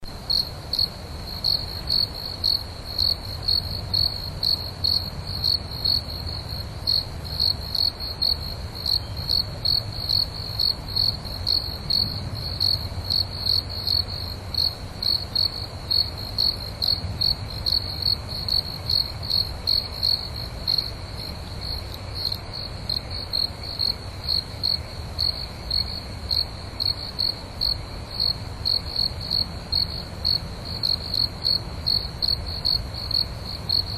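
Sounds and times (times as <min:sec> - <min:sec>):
crickets chirping: 0:00.0 - 0:33.9.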